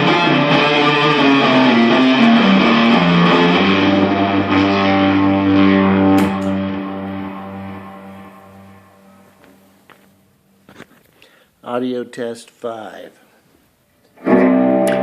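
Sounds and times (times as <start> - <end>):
guitar playing: 0.0 - 10.0, 14.2 - 15.0.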